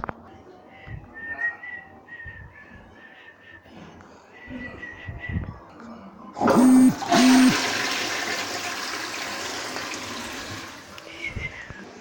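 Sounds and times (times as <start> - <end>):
short loud tones: 6.4 - 7.7.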